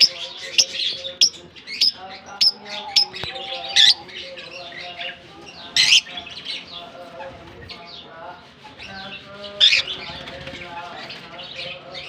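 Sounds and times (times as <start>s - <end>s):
lovebirds chirping: 0.0s - 8.2s.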